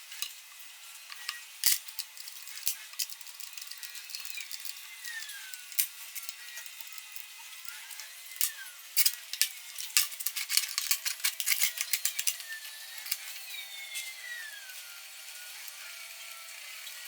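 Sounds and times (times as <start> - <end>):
wood chipper motor whine: 11.8 - 17.0.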